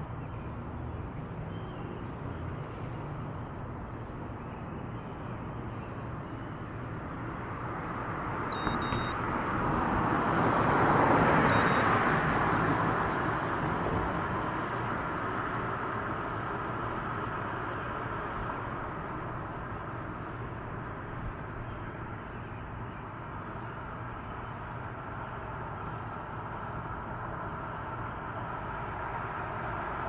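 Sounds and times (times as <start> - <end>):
car passing by: 8.4 - 15.5
short electronic beeps: 8.5 - 9.2, 11.5 - 11.9.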